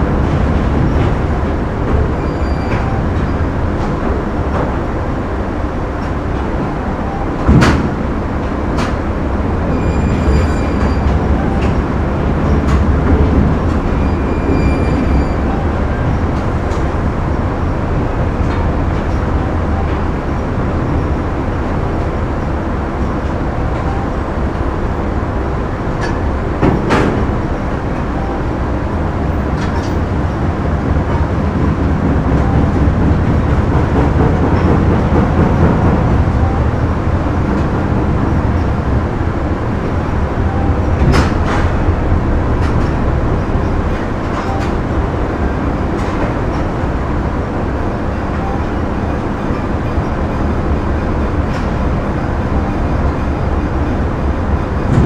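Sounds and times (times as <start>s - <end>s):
factory machinery rumbling: 0.0s - 55.0s
high-pitched squeals: 13.9s - 16.1s.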